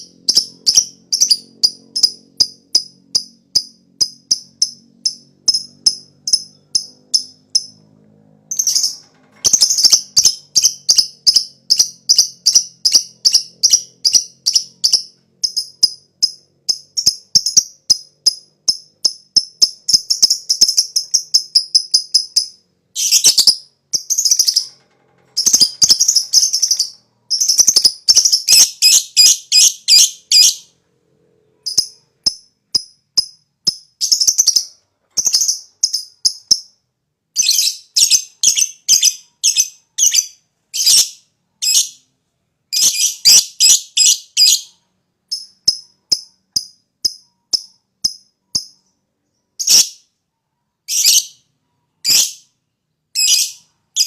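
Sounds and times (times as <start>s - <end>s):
lovebird chattering: 0.0s - 7.8s, 8.5s - 30.7s.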